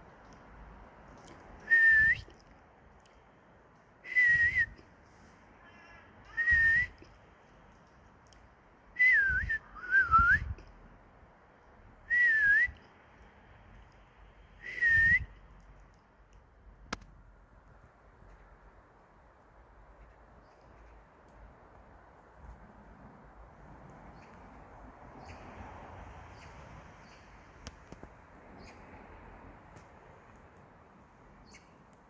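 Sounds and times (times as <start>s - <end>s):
person whistling short notes: 1.7s - 2.3s, 4.1s - 4.8s, 6.3s - 7.0s, 9.0s - 10.6s, 12.1s - 12.8s, 14.6s - 15.4s.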